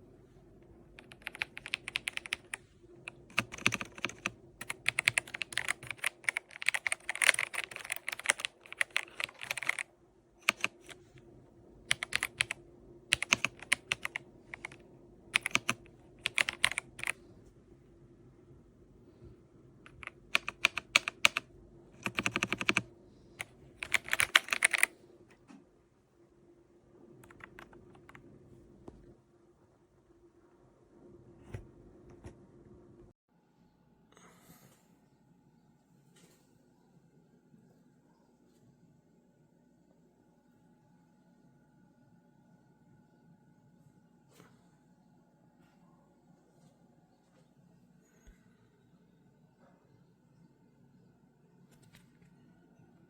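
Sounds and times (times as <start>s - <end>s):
mechanical keyboard typing: 1.0s - 11.0s, 11.9s - 17.2s, 19.9s - 24.9s, 27.2s - 28.2s.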